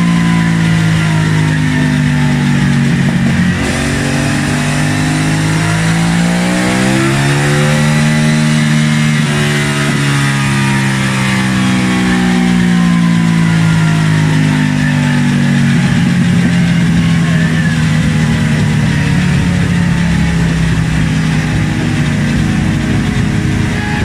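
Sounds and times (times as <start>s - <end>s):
motorcycle engine under load: 0.0s - 24.0s.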